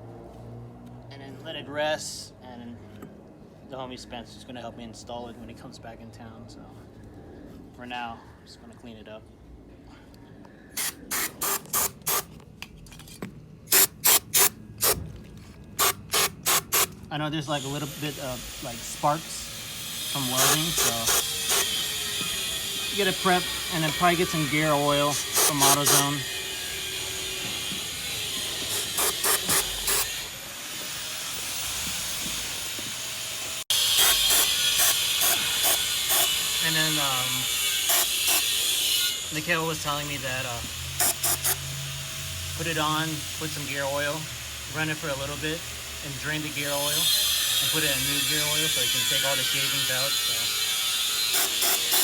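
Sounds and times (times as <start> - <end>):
aerosol spray hissing bursts: 13.7 - 15.0, 15.8 - 16.9, 28.7 - 30.0.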